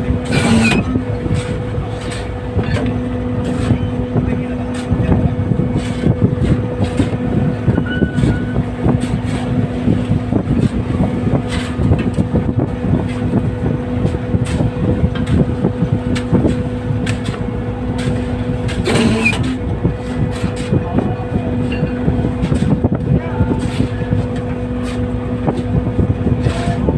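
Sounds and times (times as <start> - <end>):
boat engine humming: 0.0 - 26.9
boat knocking in rough seas: 0.0 - 26.9.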